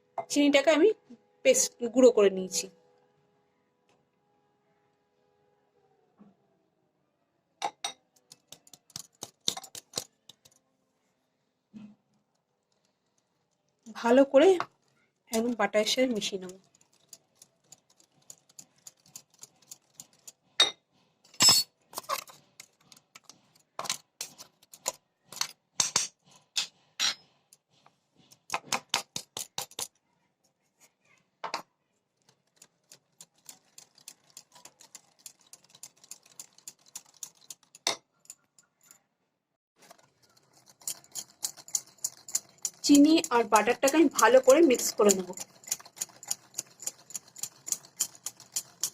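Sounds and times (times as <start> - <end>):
utensil clinking against mixing bowl: 40.0 - 48.9.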